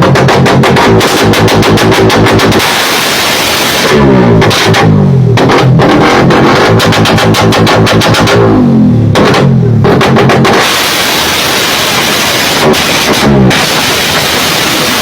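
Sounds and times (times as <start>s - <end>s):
motorcycle engine revving: 0.0s - 15.0s.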